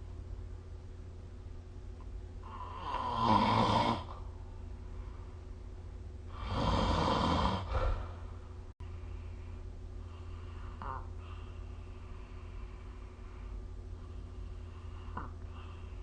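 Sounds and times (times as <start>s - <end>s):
person snoring: 2.4s - 4.2s, 6.3s - 8.3s.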